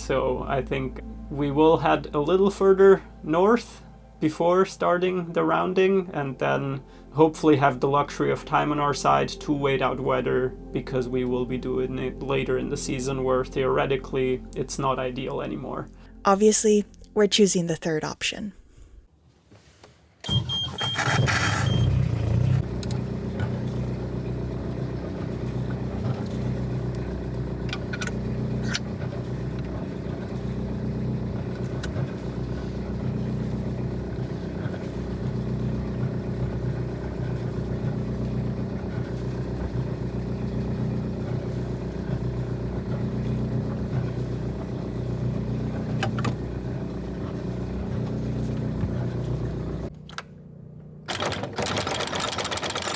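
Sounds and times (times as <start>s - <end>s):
diesel engine clattering drone: 20.8s - 52.9s.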